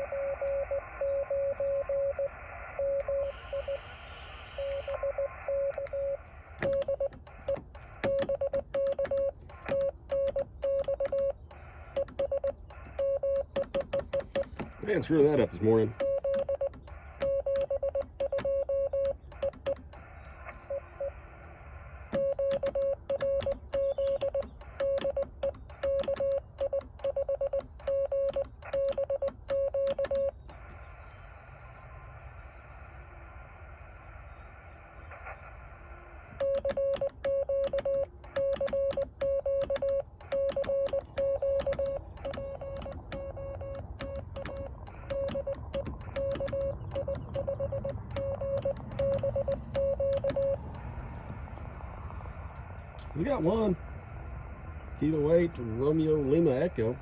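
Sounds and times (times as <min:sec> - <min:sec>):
morse code tone: 0:00.0 - 0:19.9, 0:22.1 - 0:30.7, 0:36.2 - 0:51.4
receiver hiss: 0:00.0 - 0:57.0
keying clicks: 0:04.6 - 0:20.1, 0:22.1 - 0:30.7, 0:36.3 - 0:53.2.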